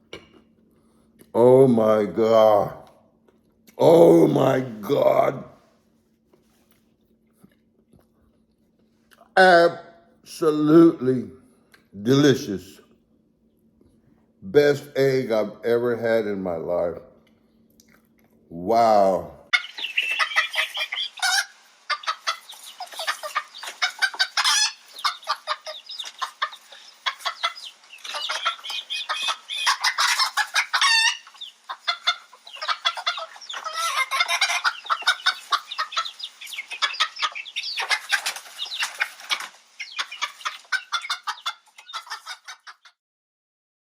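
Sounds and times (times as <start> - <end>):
chickens clucking: 3.6 - 5.6, 14.7 - 43.0.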